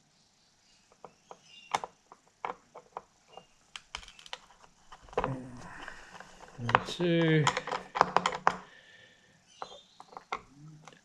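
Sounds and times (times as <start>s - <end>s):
screwdriver clicking and tapping: 5.9s - 8.7s.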